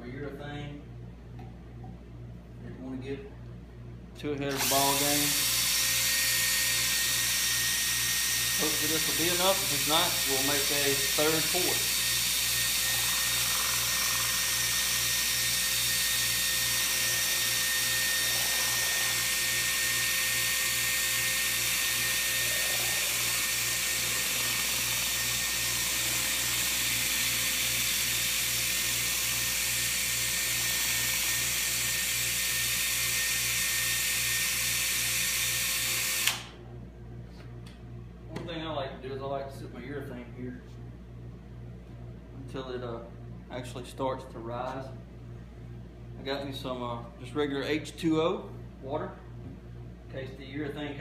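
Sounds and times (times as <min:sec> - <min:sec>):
electric drill mixing: 0:04.5 - 0:36.6.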